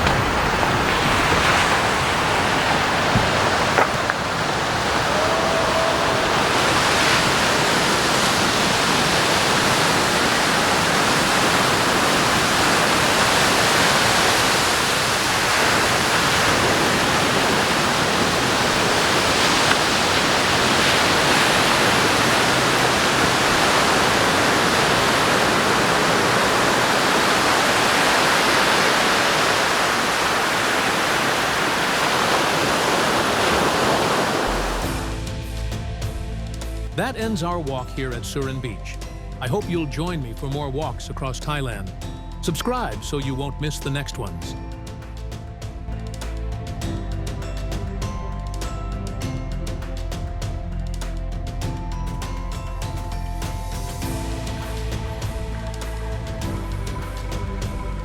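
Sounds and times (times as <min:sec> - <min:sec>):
sea surf washing onto beach: 0:00.0 - 0:38.8, 0:51.6 - 0:58.0.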